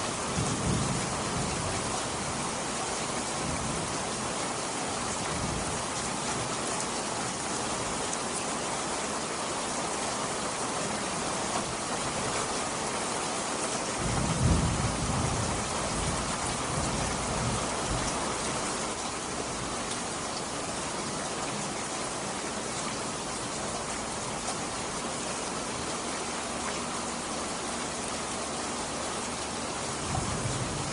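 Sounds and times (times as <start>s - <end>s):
steady rain pouring: 0.0s - 30.9s
low rumble of thunder: 0.1s - 2.6s, 14.0s - 18.7s, 29.8s - 30.9s.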